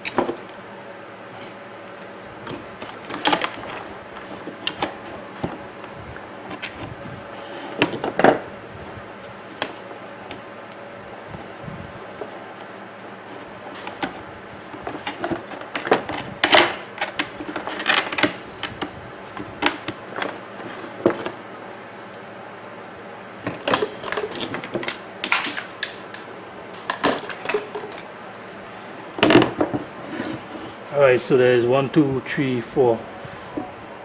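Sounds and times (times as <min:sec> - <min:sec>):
coffee maker parts clicking and rattling: 0:02.9 - 0:03.8, 0:14.8 - 0:18.8, 0:23.5 - 0:26.3, 0:26.9 - 0:28.1.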